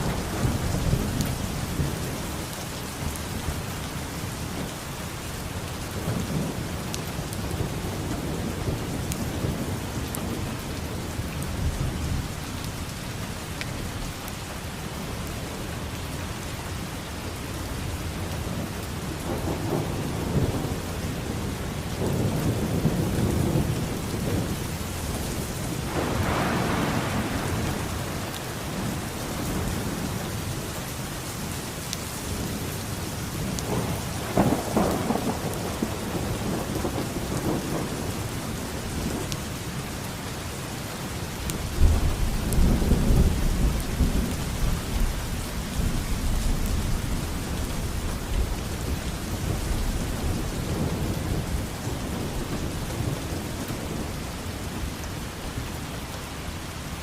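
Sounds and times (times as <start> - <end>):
steady rain falling: 0.0 - 57.0
rolling thunder: 19.1 - 30.5, 33.4 - 39.4, 41.6 - 55.0.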